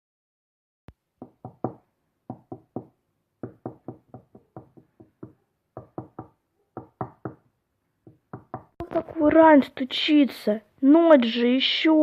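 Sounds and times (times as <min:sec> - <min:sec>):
knocking on a window: 0:01.2 - 0:08.8.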